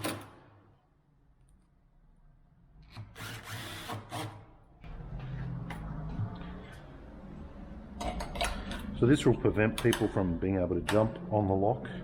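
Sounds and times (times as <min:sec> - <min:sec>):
power drill running: 0:03.2 - 0:04.2.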